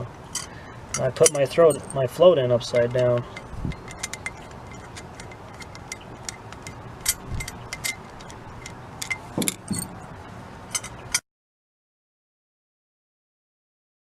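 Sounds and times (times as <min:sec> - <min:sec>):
small metal parts clinking: 0:00.3 - 0:10.0, 0:10.7 - 0:11.2.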